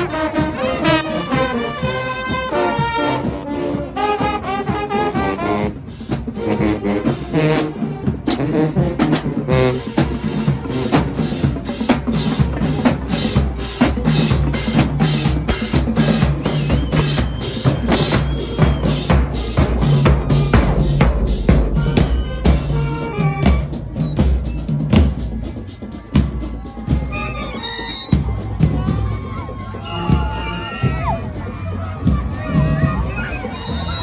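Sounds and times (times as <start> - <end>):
brass holding notes: 0.0 - 11.9, 17.5 - 23.8
snare and bass drums beat: 0.0 - 34.0.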